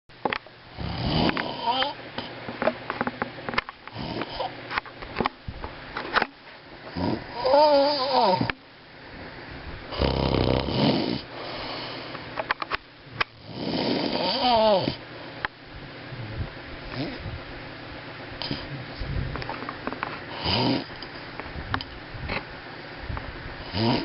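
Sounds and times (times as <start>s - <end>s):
man snoring: 0.8s - 2.0s, 3.9s - 4.5s, 6.9s - 8.5s, 9.9s - 12.0s, 13.4s - 15.0s, 16.9s - 17.2s, 20.3s - 20.9s, 23.7s - 24.0s.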